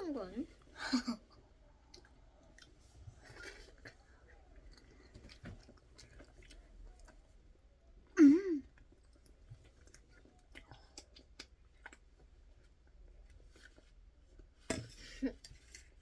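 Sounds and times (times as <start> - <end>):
person chewing: 1.8 - 7.3, 8.6 - 14.5.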